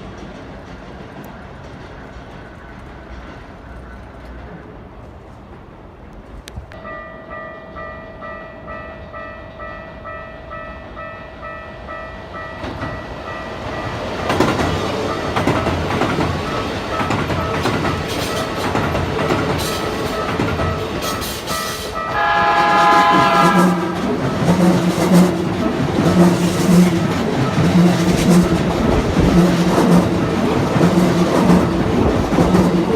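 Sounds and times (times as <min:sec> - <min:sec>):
train wheels clattering over rail joints: 0:00.0 - 0:04.5, 0:14.2 - 0:22.1, 0:23.7 - 0:32.9
train horn: 0:22.0 - 0:24.8.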